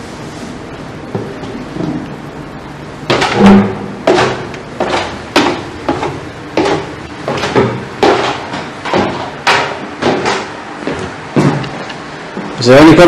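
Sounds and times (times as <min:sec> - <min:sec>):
footsteps on deck: 0:03.1 - 0:12.6.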